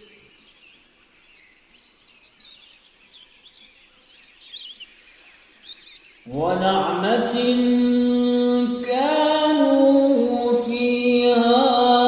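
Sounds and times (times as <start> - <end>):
small birds twittering: 0.0 - 7.9.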